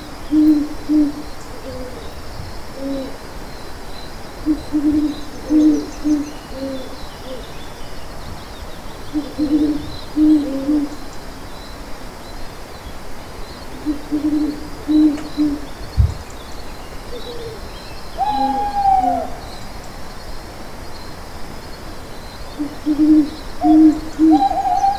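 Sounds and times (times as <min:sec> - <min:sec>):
owl hooting: 0:13.8 - 0:15.7, 0:18.2 - 0:19.5, 0:22.6 - 0:24.9.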